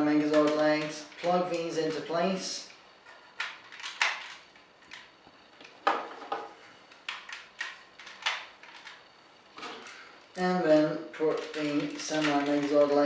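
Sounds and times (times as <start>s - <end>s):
plastic toy parts clicking: 0.2s - 2.2s, 3.4s - 5.1s, 6.9s - 9.0s, 11.1s - 13.0s.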